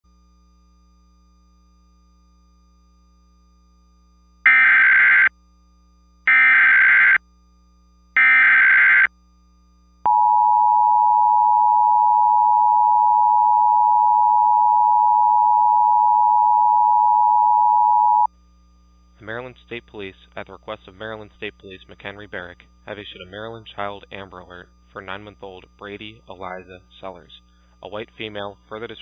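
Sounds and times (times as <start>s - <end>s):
screechy digital data bursts: 4.5s - 5.3s, 6.3s - 7.2s
two-tone attention signal: 4.5s - 5.3s, 10.1s - 18.3s.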